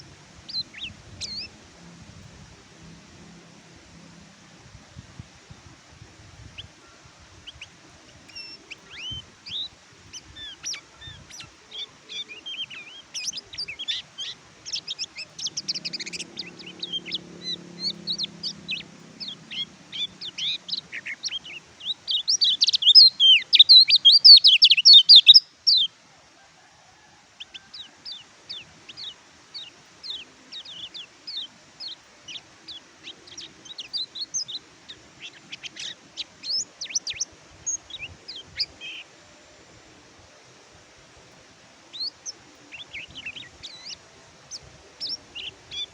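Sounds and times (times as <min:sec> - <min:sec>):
bird twittering song: 0:00.0 - 0:01.6, 0:06.6 - 0:25.9, 0:27.4 - 0:39.1, 0:41.9 - 0:45.9.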